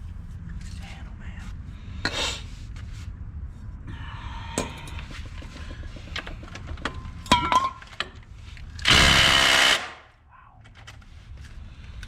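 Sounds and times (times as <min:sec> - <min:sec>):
power tool burst: 0:08.8 - 0:10.0.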